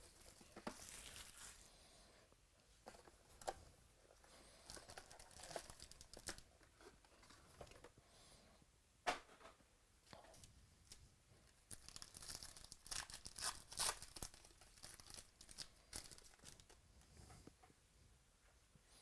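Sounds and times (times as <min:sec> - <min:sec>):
card pack wrappers crinkling: 0:00.0 - 0:01.7, 0:04.6 - 0:06.5, 0:11.7 - 0:16.8.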